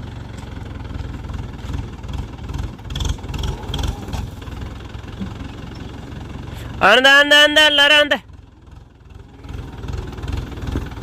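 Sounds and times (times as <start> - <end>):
tractor diesel engine revving: 0.0 - 11.0
exhaust crackles: 1.6 - 6.8.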